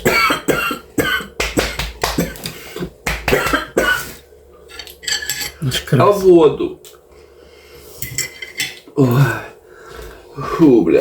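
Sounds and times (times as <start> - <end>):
person coughing harshly: 0.0 - 2.5, 3.3 - 4.2.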